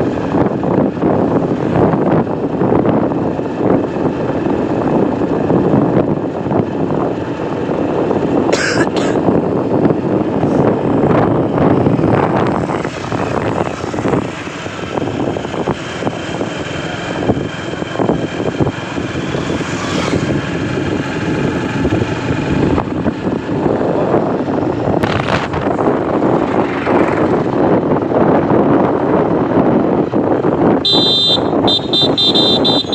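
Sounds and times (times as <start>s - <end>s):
train wheels rumbling on track: 6.7s - 28.4s.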